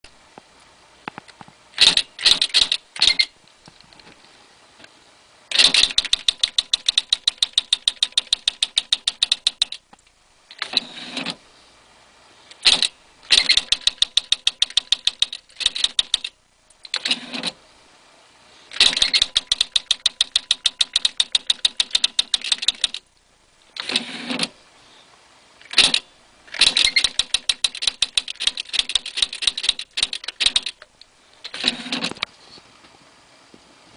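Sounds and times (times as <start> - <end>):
electric typewriter typing: 1.8 - 3.3, 5.5 - 9.8, 12.6 - 17.6, 18.7 - 23.1, 23.8 - 24.6, 25.6 - 30.9, 31.5 - 32.3.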